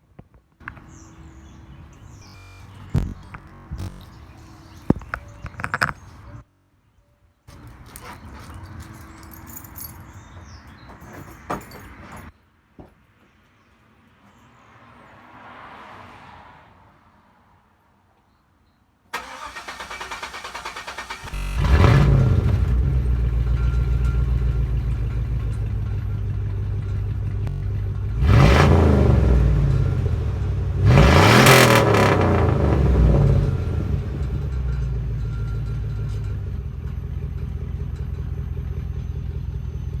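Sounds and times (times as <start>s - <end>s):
engine revving: 19.2s - 23.9s, 27.4s - 34.7s.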